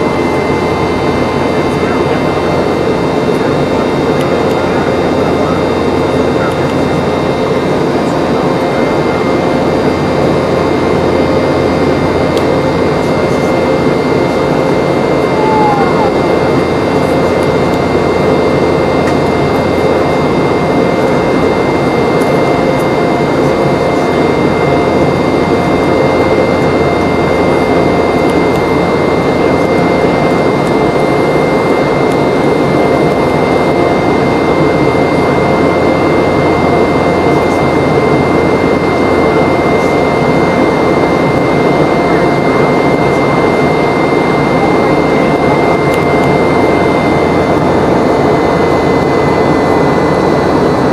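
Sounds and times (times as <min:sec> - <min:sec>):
airplane cabin engine rush: 0:00.0 - 0:50.9
steady high whine: 0:00.0 - 0:50.9.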